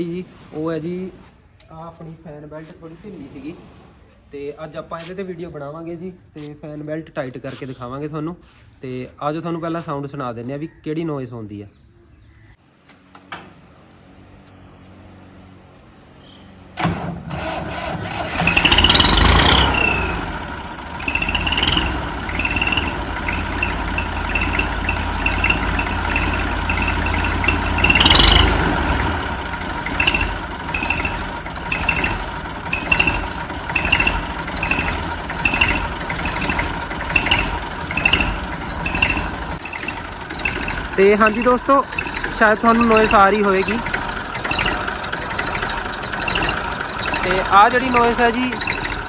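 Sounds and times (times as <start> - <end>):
tractor diesel engine revving: 16.6 - 49.0
fan belt squealing: 16.8 - 49.0.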